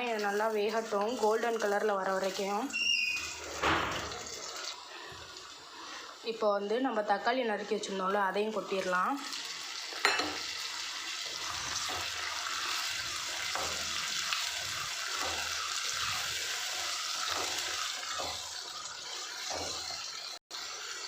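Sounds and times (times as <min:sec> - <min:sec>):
food sizzling in hot oil: 0:00.0 - 0:21.0.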